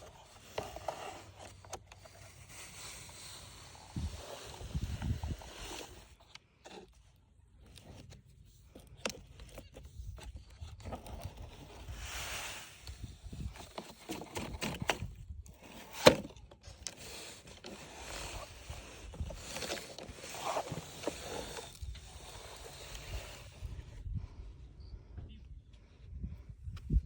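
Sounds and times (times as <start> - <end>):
toys scraping in sand: 0.0 - 6.3, 11.0 - 14.6, 16.6 - 24.0.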